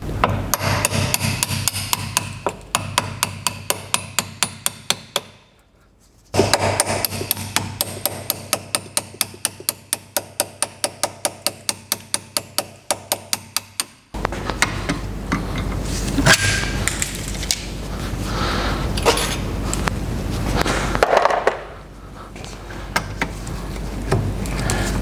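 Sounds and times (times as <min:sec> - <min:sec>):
hammer tapping on metal: 0:00.2 - 0:05.4, 0:06.4 - 0:14.0.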